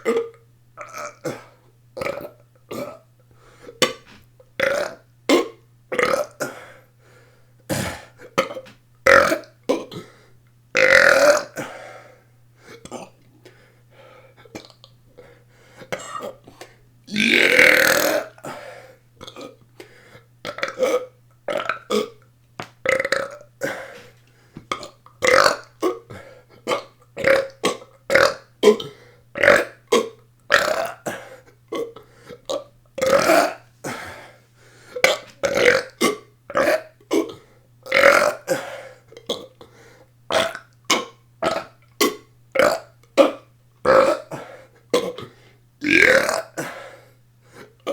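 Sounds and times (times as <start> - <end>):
person burping: 0.0 - 3.1, 3.8 - 6.6, 7.7 - 10.1, 10.8 - 11.8, 15.9 - 16.4, 17.1 - 18.6, 19.2 - 19.6, 20.4 - 22.2, 22.8 - 24.1, 24.7 - 34.2, 35.0 - 39.6, 40.3 - 46.9.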